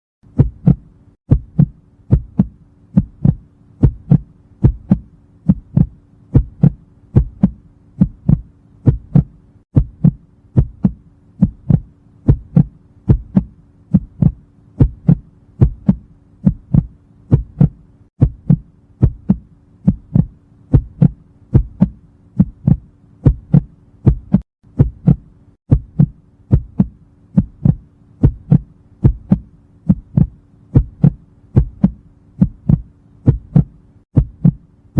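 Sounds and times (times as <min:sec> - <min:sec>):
heartbeat double thump: 0:00.2 - 0:34.6
faint steady hum: 0:00.2 - 0:34.9.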